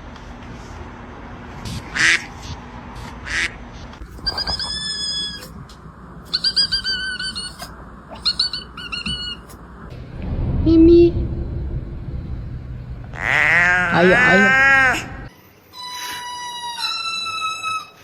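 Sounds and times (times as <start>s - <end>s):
high-pitched animal calls: 3.2s - 5.6s, 6.3s - 9.6s, 13.1s - 18.0s.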